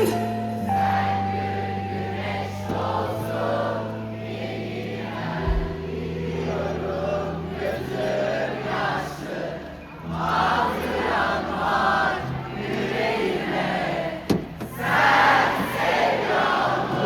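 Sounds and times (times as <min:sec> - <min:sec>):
live rock band playing: 0:00.0 - 0:01.6
crowd singing along: 0:00.0 - 0:17.0.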